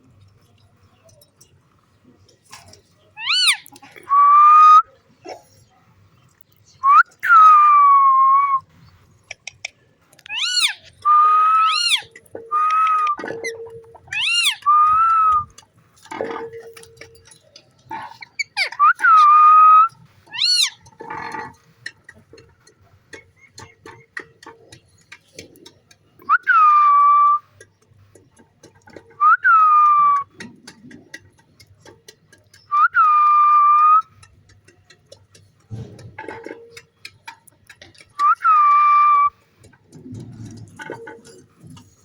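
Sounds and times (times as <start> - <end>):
parrot whistling: 10.3 - 13.2, 14.1 - 15.5, 38.2 - 39.3.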